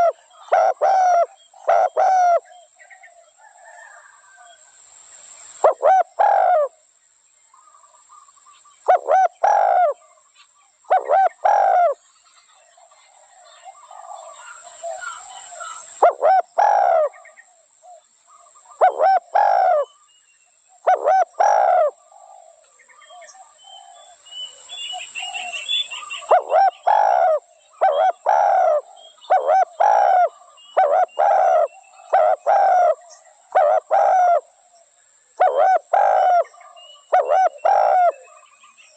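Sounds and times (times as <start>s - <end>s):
dove cooing: 0.0s - 2.6s, 5.6s - 6.8s, 8.9s - 10.1s, 10.9s - 12.0s, 13.1s - 18.0s, 18.7s - 20.0s, 20.8s - 24.1s, 25.0s - 38.5s
small birds chirping: 7.5s - 38.9s.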